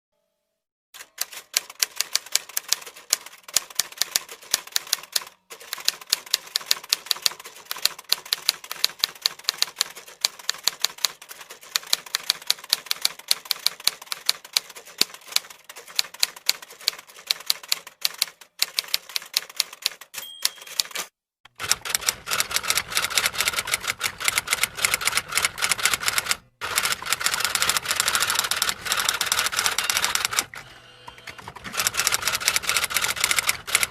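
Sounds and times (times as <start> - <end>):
typewriter keys clattering: 1.0 - 30.5, 31.4 - 33.9
typewriter bell ring: 20.0 - 22.6, 26.8 - 30.4.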